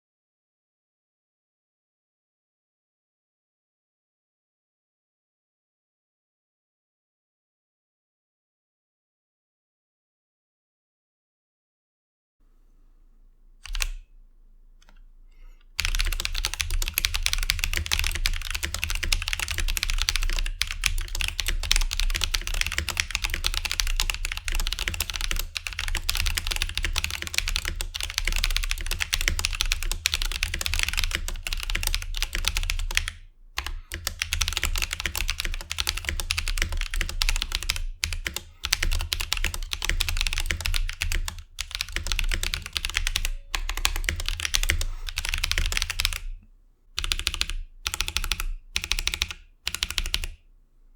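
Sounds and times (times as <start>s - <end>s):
fast mechanical keyboard typing: 13.6s - 14.1s, 15.7s - 46.3s, 47.0s - 50.4s.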